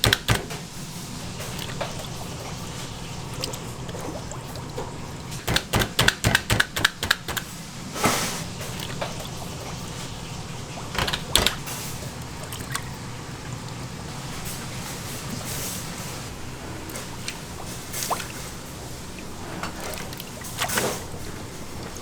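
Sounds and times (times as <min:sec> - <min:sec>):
sharp knocks: 0:00.0 - 0:00.6, 0:05.4 - 0:07.5, 0:11.0 - 0:11.6.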